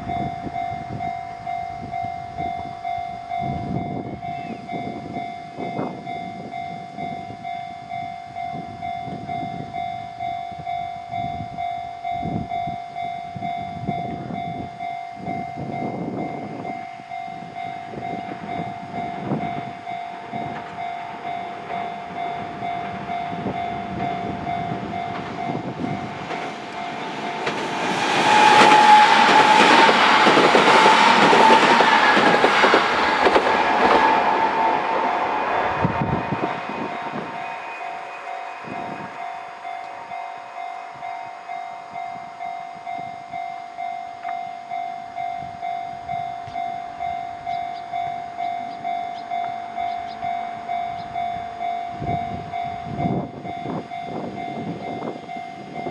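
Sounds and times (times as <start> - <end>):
electric train passing: 0.0 - 55.9
level-crossing alarm bell ringing: 0.0 - 55.9.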